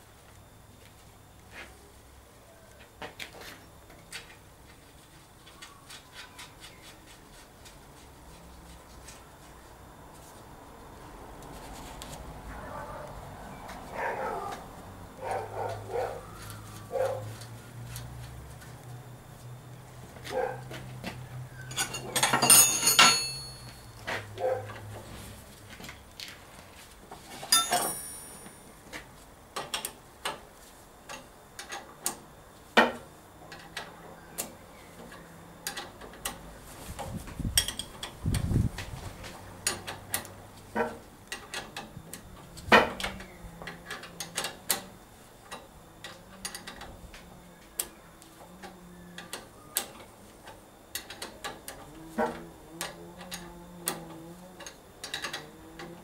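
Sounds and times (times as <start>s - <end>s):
metal parts clinking and tapping: 21.7s - 23.9s, 27.4s - 28.7s.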